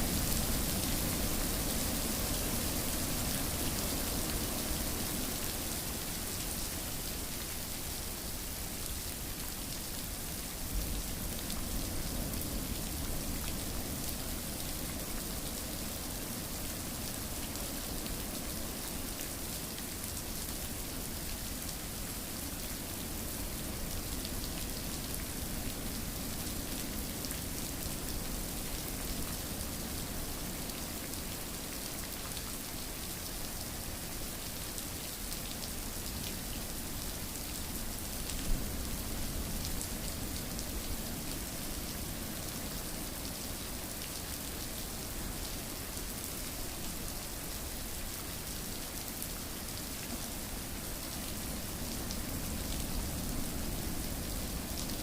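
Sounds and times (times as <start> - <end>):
rain pattering on a surface: 0.0 - 55.0.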